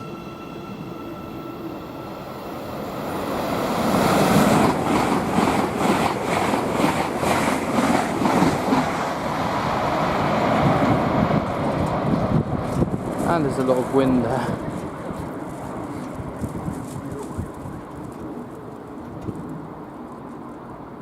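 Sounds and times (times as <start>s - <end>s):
passenger train passing: 0.0s - 21.0s
wind buffeting microphone: 3.3s - 19.9s.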